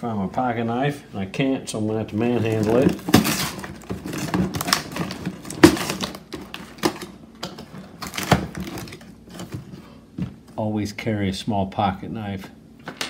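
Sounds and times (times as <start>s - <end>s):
cardboard box being torn open: 2.5s - 7.1s.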